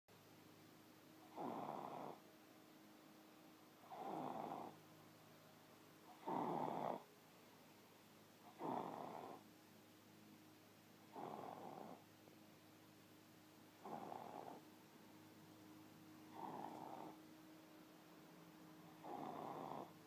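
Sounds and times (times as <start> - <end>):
toddler snoring: 1.2 - 2.2, 3.8 - 4.8, 6.1 - 7.1, 8.4 - 9.4, 11.1 - 12.0, 13.8 - 14.7, 16.3 - 17.2, 18.9 - 20.0.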